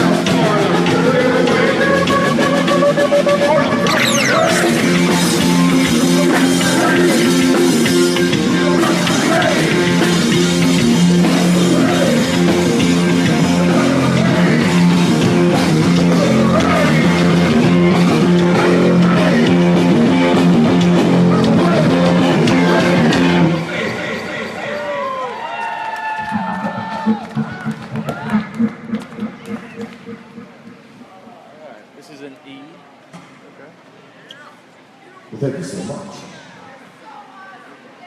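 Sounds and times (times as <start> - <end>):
drum kit: 0.0 - 23.6, 26.2 - 31.2
electric guitar: 0.0 - 23.8
bass guitar: 0.0 - 23.9.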